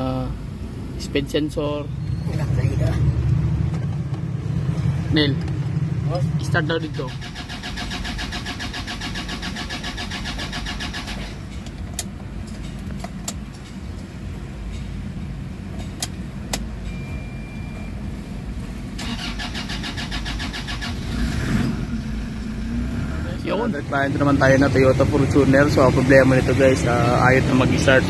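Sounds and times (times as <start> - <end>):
starter motor cranking engine: 6.9 - 11.6, 19.0 - 21.6.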